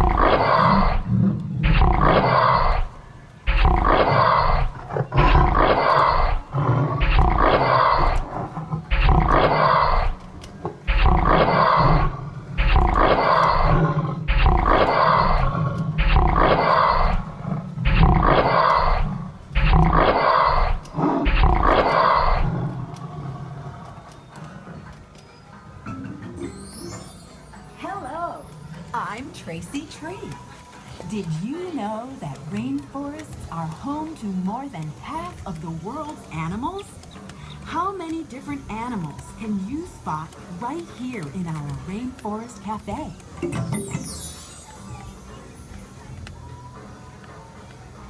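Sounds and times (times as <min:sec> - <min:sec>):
recorded animal roars: 0:00.0 - 0:24.8.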